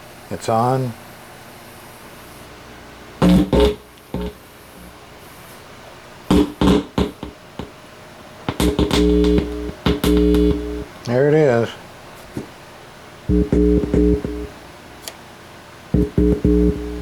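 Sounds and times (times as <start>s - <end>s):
electric guitar notes and chords: 3.2s - 4.4s, 8.5s - 10.9s, 13.3s - 14.6s, 16.0s - 17.0s.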